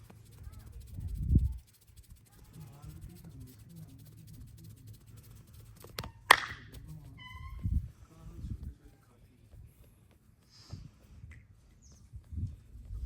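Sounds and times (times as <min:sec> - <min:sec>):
massage hands clicking: 0:00.0 - 0:07.0.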